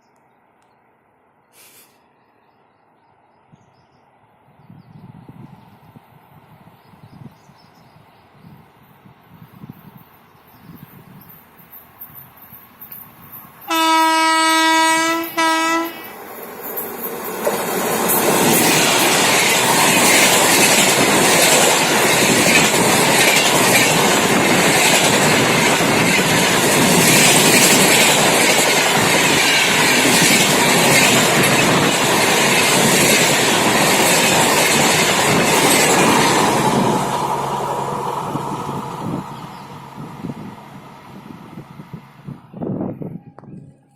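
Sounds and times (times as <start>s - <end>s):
train wheels rushing on rails: 9.4s - 43.6s.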